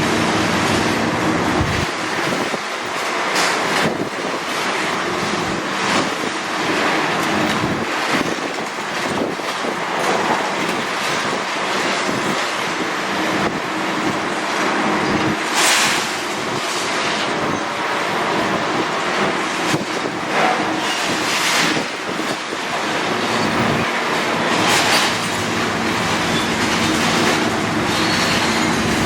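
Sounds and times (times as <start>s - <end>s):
excavator engine running: 0.0s - 29.0s
concrete breaking and rubble falling: 23.9s - 29.0s.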